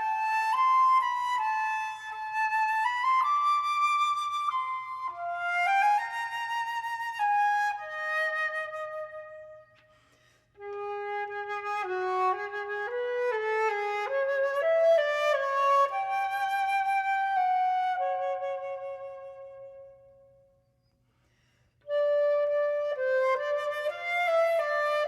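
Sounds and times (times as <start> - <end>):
flute playing slow melody: 10.6 - 20.0, 21.8 - 25.0.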